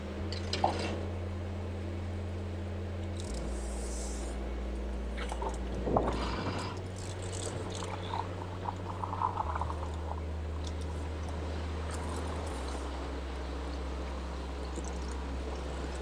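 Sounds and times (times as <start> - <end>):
low engine drone: 0.0 - 16.0
creaks and clicks: 0.3 - 1.1, 3.0 - 4.1, 5.2 - 13.0, 14.6 - 16.0
squelching mud and water: 5.2 - 12.9.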